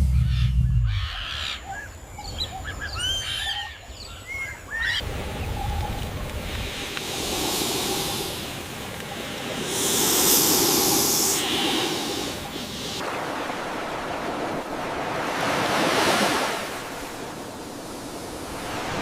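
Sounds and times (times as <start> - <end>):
ocean surf washing in: 5.0 - 19.0.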